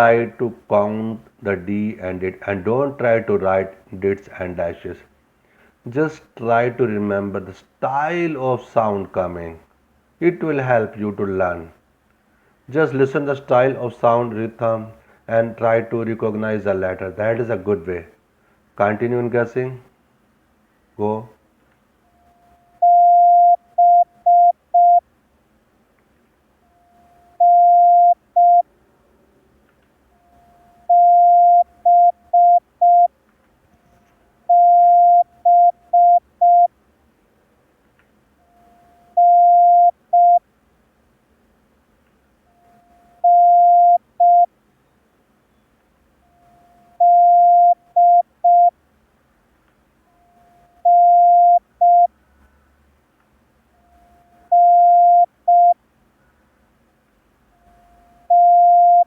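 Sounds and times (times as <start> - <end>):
morse code beeps: 22.4 - 25.0, 26.7 - 28.6, 30.3 - 33.1, 34.5 - 36.7, 38.5 - 40.4, 42.6 - 44.5, 46.3 - 48.7, 50.3 - 52.1, 53.9 - 55.8, 57.6 - 59.0.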